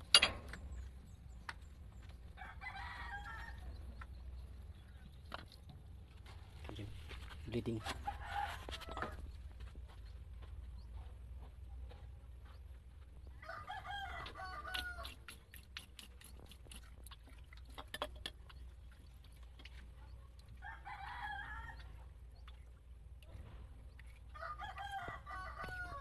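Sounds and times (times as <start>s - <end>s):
rooster crowing: 13.4s - 15.1s, 20.6s - 21.8s, 24.4s - 26.0s.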